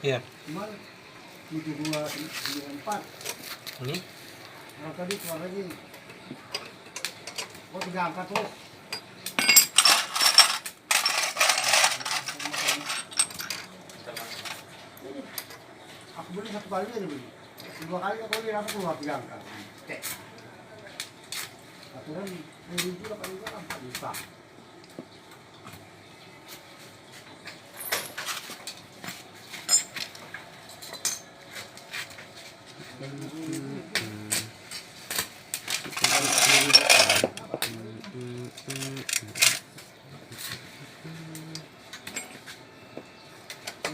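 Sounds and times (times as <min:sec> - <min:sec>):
small metal objects clinking: 0:08.9 - 0:14.6, 0:29.6 - 0:31.3, 0:35.6 - 0:39.6.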